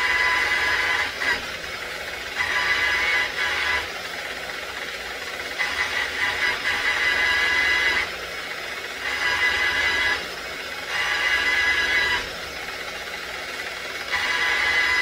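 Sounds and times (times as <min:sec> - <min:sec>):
electric polisher whine: 0:00.0 - 0:01.5, 0:02.3 - 0:03.9, 0:05.5 - 0:08.2, 0:09.0 - 0:12.6, 0:14.0 - 0:15.0.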